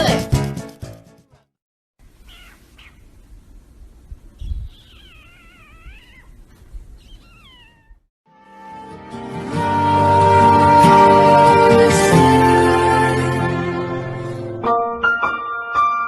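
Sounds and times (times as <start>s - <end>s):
cat meowing: 2.2s - 3.0s, 4.4s - 6.4s, 7.0s - 8.1s.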